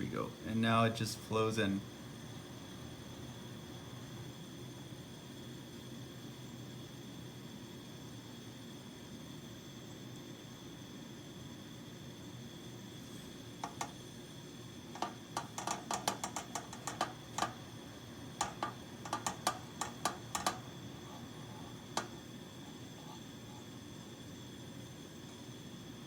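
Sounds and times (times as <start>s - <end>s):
steady hiss: 0.0s - 26.0s
metal rod tapping on metal: 13.6s - 14.0s, 15.0s - 17.7s, 18.4s - 22.2s.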